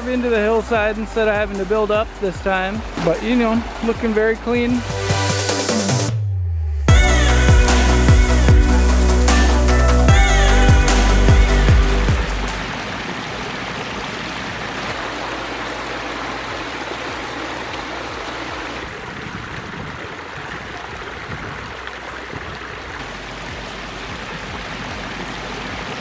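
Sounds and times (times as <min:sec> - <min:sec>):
waterfall cascading over rocks: 0:06.9 - 0:26.0.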